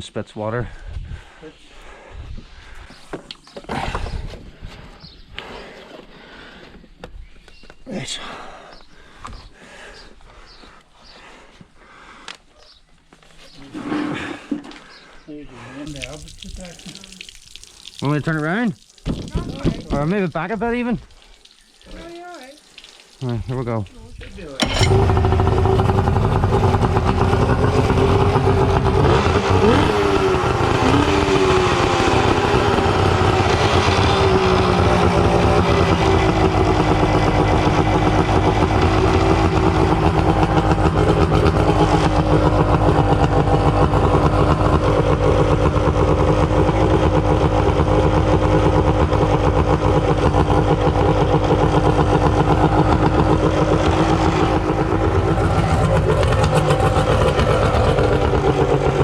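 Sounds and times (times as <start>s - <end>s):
outboard motor running: 24.6s - 59.0s.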